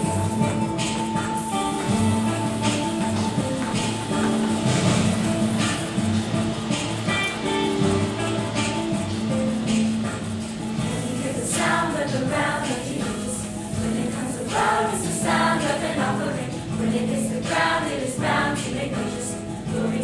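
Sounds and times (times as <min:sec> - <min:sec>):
instrumental music with low notes: 0:00.0 - 0:20.0
choir singing: 0:10.8 - 0:20.0.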